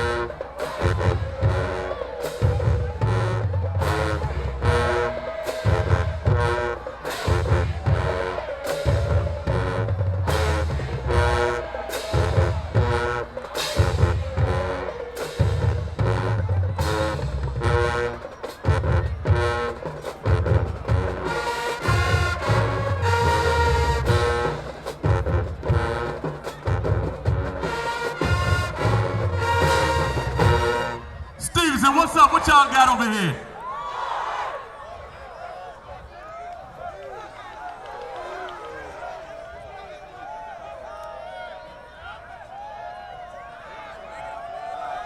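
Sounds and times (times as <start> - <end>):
marching band playing: 0.0 - 33.7.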